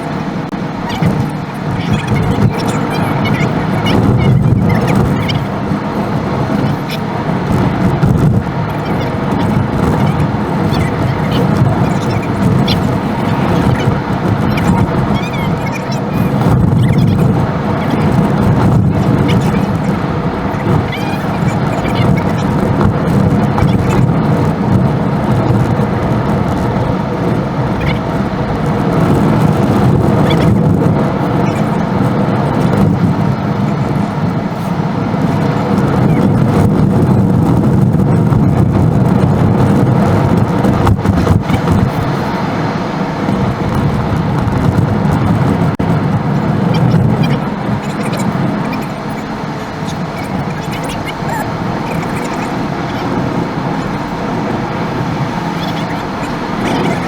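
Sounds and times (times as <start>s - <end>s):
car driving rumble: 0.0s - 57.0s.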